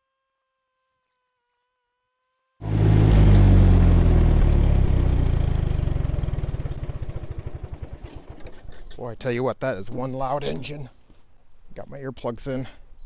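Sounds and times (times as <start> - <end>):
trencher engine running: 2.6 - 9.0.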